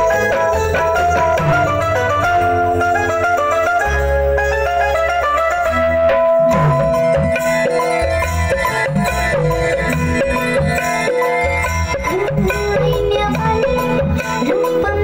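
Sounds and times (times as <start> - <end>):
loud folk dance music: 0.0 - 15.0.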